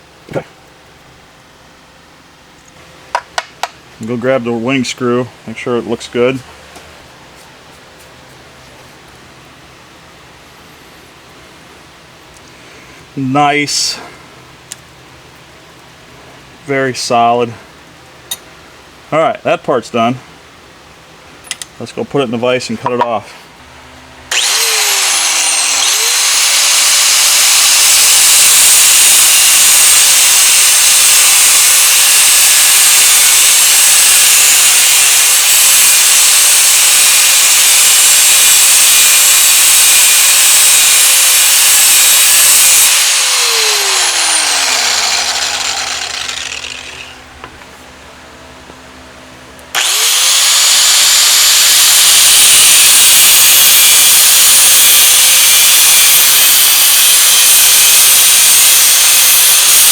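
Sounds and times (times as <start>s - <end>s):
angle grinder cutting metal: 24.3s - 47.3s, 49.7s - 59.9s.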